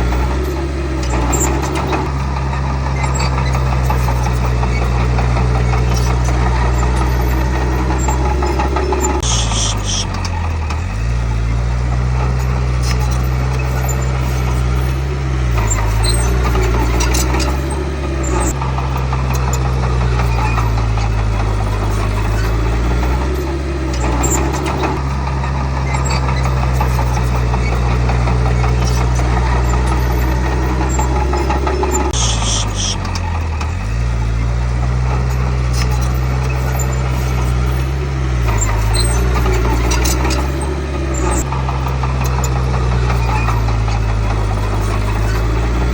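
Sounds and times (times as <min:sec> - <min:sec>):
short high squeal: 0:00.0 - 0:10.4, 0:19.3 - 0:25.1, 0:25.9 - 0:34.0
bulldozer diesel engine running: 0:00.0 - 0:45.9.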